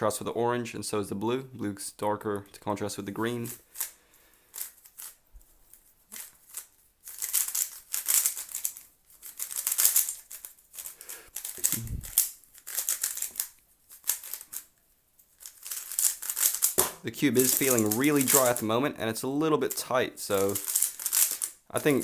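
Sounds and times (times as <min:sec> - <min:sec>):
speed cube turning clicks: 0:07.1 - 0:10.2, 0:10.8 - 0:13.5, 0:14.1 - 0:14.6, 0:15.4 - 0:16.8, 0:20.5 - 0:21.6.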